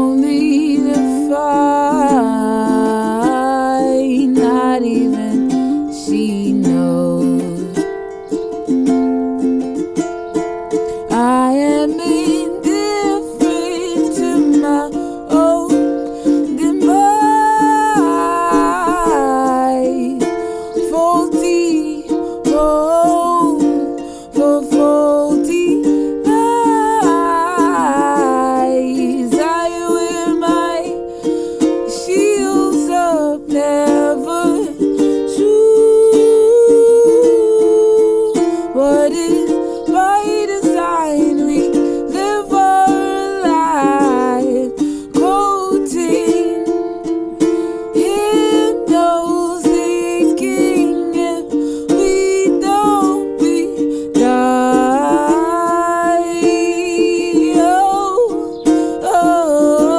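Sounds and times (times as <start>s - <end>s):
person singing wordless melody: 0.0s - 59.9s
plucked string accompaniment: 0.0s - 59.9s.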